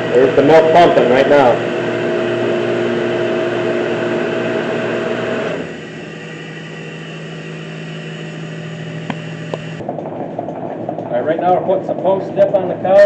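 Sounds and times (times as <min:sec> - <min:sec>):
milk pump motor humming: 0:00.0 - 0:09.8.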